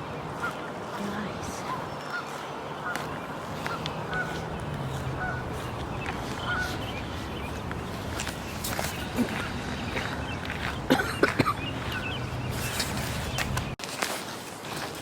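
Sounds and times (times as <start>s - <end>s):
steady outdoor hiss: 0.0s - 15.0s
geese honking: 1.6s - 13.8s.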